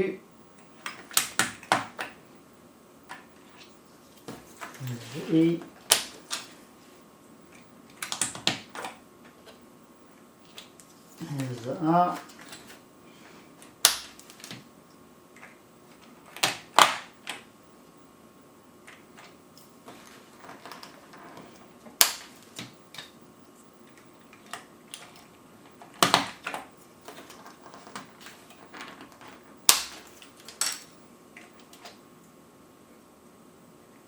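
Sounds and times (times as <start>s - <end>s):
keycaps snapping on with plastic clicks: 7.9s - 9.0s.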